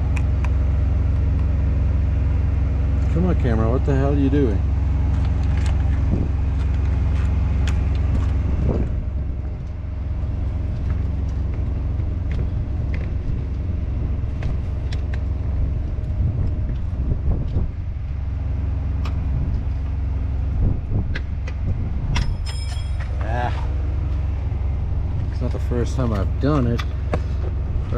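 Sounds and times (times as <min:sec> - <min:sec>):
engine idling rumble: 0:00.0 - 0:27.9
ringing metallic clink: 0:22.2 - 0:23.3.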